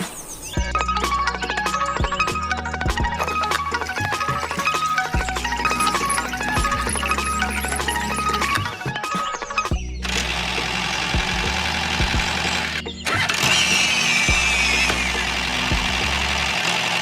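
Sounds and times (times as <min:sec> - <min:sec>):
thin squeal gliding down: 0:00.0 - 0:11.2, 0:12.4 - 0:16.4
small engine running: 0:10.0 - 0:17.0.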